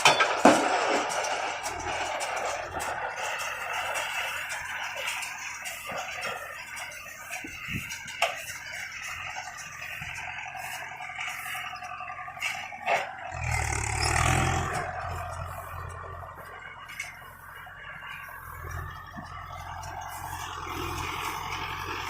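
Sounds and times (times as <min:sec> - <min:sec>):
baler mechanical clatter: 0:00.0 - 0:22.0
low rumble: 0:08.7 - 0:22.0.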